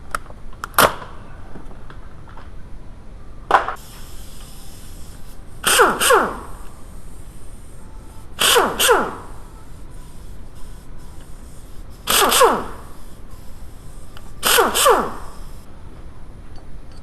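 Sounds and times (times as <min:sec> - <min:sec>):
power tool bursts with falling whine: 0:03.6 - 0:15.7.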